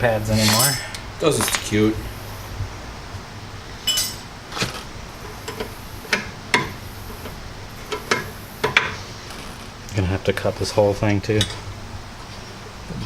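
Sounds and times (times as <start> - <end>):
metal parts clinking: 0.3 - 1.6, 3.9 - 4.2.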